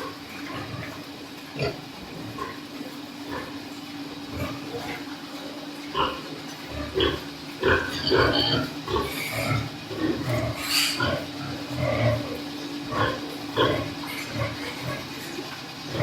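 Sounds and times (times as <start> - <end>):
pigs grunting and squealing: 0.0 - 16.0
loud high pig squeal: 6.0 - 16.0.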